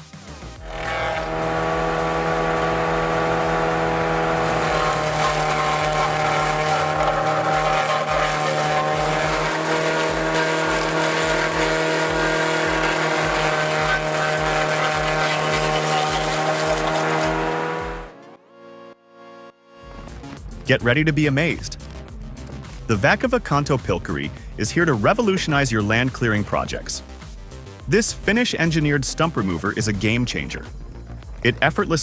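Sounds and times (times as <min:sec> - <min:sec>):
machine engine droning: 0:00.6 - 0:18.8.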